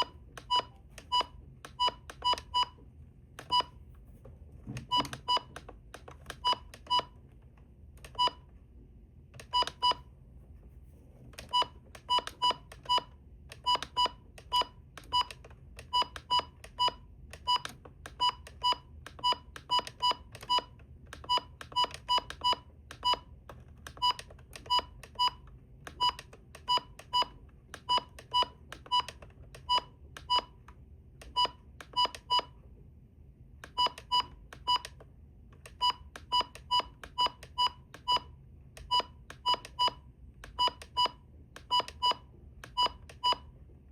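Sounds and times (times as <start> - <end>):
radio button beeps: 0.0 - 2.8, 3.4 - 3.8, 4.8 - 5.6, 6.4 - 7.2, 8.1 - 8.4, 9.4 - 10.0, 11.4 - 23.3, 24.0 - 30.6, 31.3 - 32.5, 33.7 - 35.0, 35.7 - 43.5.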